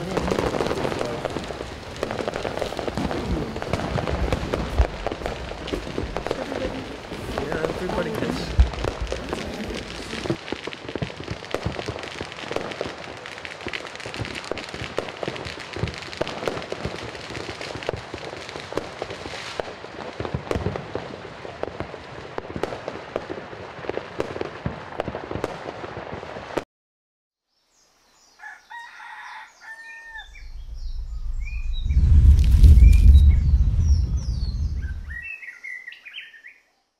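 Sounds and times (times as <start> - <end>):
fireworks crackling and popping: 0.0 - 26.6, 30.2 - 35.2
faint bird calls: 28.4 - 32.0.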